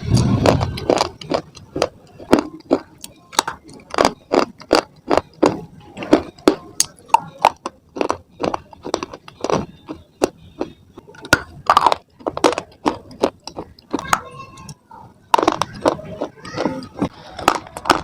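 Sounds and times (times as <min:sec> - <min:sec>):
stone being crunched and chewed: 0:17.4 - 0:18.0.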